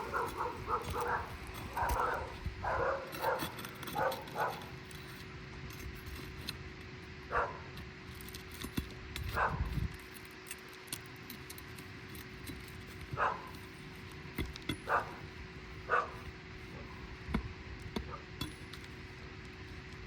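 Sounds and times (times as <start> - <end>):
faint steady hum: 0.0 - 20.0
dog barking: 0.1 - 4.7, 7.3 - 7.6, 13.2 - 13.5, 14.9 - 15.2, 15.9 - 16.2.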